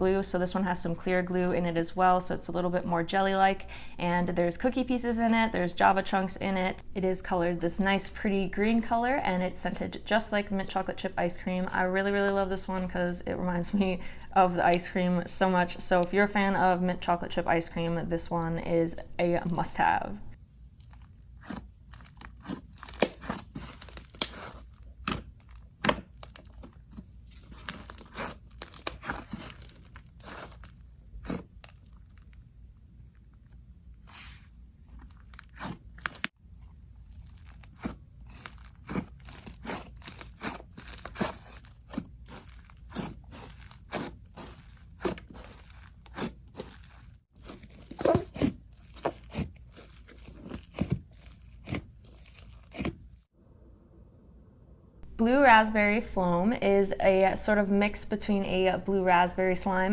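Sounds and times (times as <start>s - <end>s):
slime crackling and popping: 20.8s - 53.1s.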